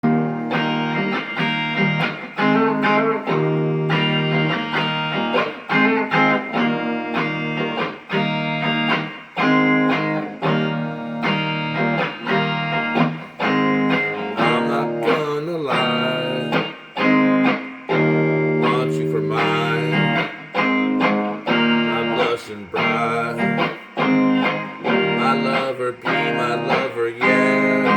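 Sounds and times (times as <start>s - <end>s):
guitar chords: 0.0s - 27.9s.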